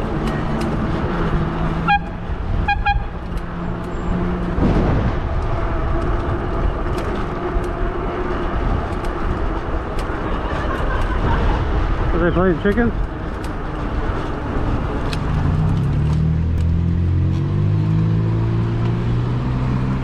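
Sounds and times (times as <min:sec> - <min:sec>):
street traffic: 0:00.0 - 0:20.0
car horn beeps: 0:01.8 - 0:03.2.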